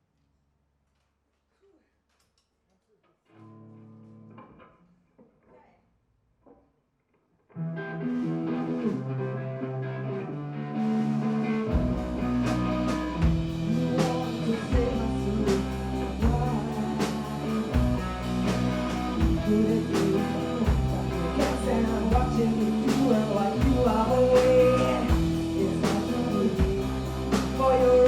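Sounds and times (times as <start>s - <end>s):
electric guitar playing: 7.5s - 28.0s
punk rock band playing: 8.0s - 28.0s.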